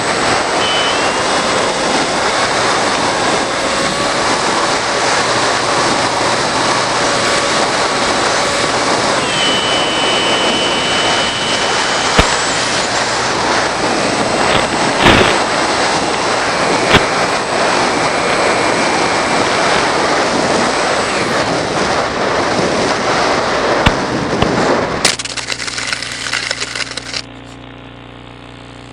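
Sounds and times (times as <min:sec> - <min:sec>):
faint high whines: 0:00.0 - 0:24.0
rushing wind noise: 0:00.0 - 0:27.2
low hum with crackles: 0:00.0 - 0:28.9
sharp clicks: 0:25.1 - 0:27.3.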